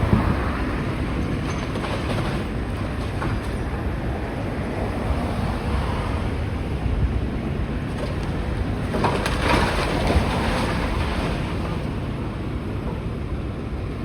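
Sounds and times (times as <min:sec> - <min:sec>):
rubble crunching and clattering: 0:00.0 - 0:04.0, 0:07.8 - 0:12.0
excavator rumbling: 0:00.0 - 0:14.0.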